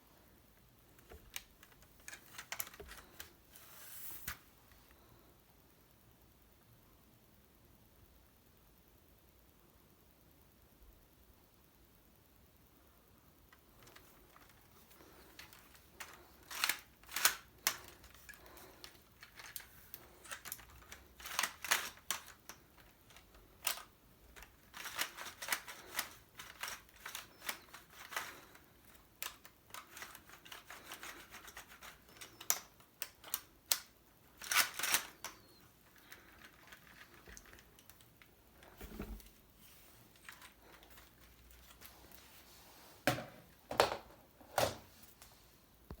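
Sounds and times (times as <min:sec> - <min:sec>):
plastic bricks clicking and rattling: 0:01.0 - 0:03.4, 0:13.8 - 0:38.8.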